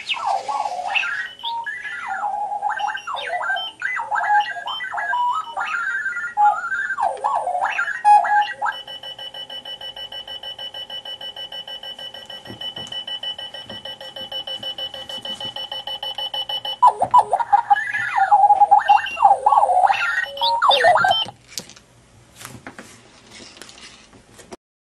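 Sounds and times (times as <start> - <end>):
electronic alarm chirps and beeps: 0.0 - 21.3
rapidly pulsing alarm tone: 0.0 - 21.3.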